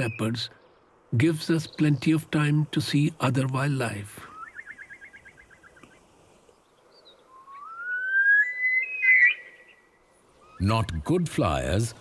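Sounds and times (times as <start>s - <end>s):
bird whistle rising in steps: 7.2s - 10.6s
bird calling rapid notes: 7.4s - 9.7s.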